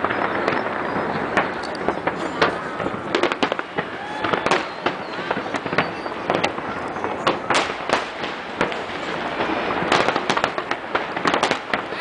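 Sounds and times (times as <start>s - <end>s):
fireworks bursting with crackling: 0.0s - 12.0s.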